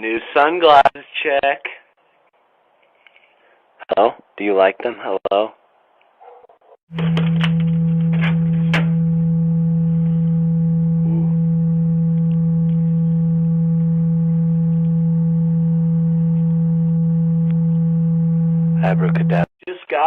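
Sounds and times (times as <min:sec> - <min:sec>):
loud steady low-pitched tone: 0:06.9 - 0:19.5
clicks: 0:12.1 - 0:13.2.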